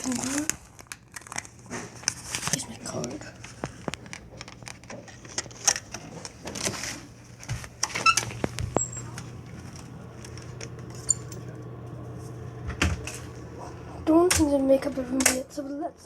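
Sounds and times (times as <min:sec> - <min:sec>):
steady low hum: 0:01.5 - 0:16.0
door unlocking and opening: 0:07.8 - 0:11.4.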